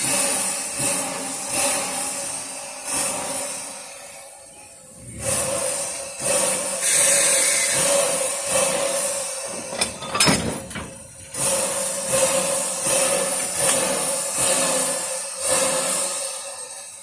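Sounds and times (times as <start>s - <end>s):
steam train rumble and hiss: 0.0s - 17.0s.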